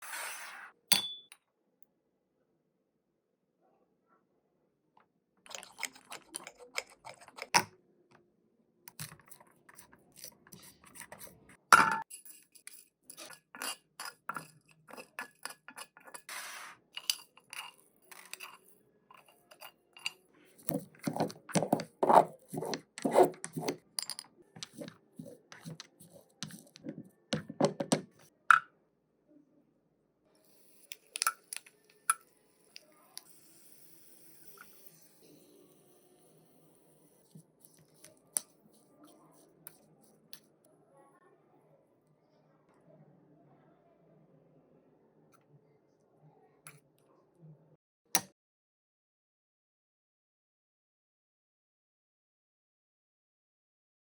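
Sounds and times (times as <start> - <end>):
small utensils clinking and scraping: 5.5 - 7.7, 8.9 - 28.3, 30.4 - 35.8.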